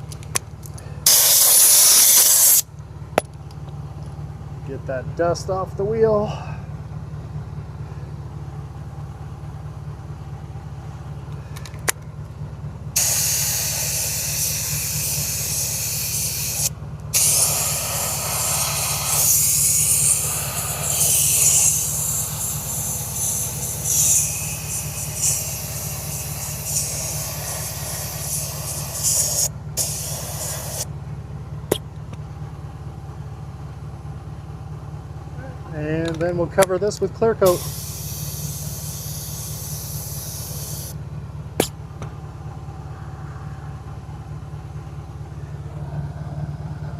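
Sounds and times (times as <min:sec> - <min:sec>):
steady low hum: 0:00.0 - 0:46.9
paint spray hissing: 0:01.1 - 0:02.6, 0:13.0 - 0:30.9, 0:37.5 - 0:41.0.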